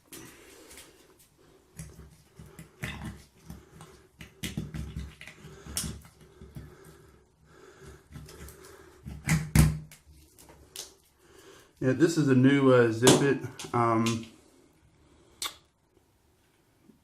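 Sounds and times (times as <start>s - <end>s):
hands clicking and knocking: 1.7s - 6.9s, 13.0s - 14.3s.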